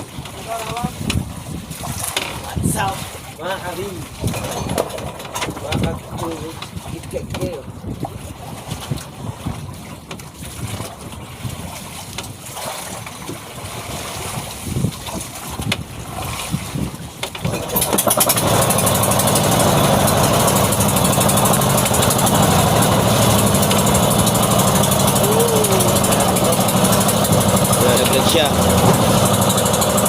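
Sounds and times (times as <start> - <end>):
boat engine running: 0.0 - 30.0
engine knocks: 17.4 - 30.0.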